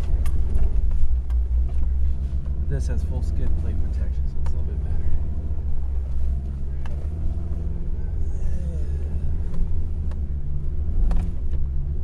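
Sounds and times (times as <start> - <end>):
vehicle rumbling off-road: 0.0 - 12.0
sharp knocks over bumps: 10.9 - 11.7.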